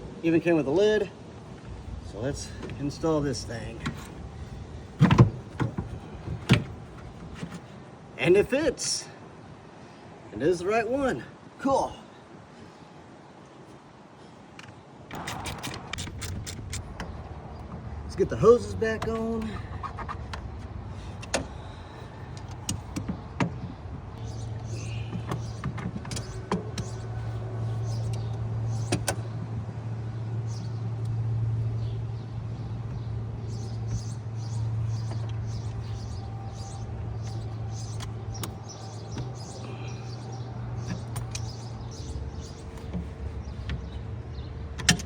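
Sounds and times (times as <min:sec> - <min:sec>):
steady low hum: 0:15.2 - 0:44.8
clicks and clinks of hose clamps: 0:40.8 - 0:41.6.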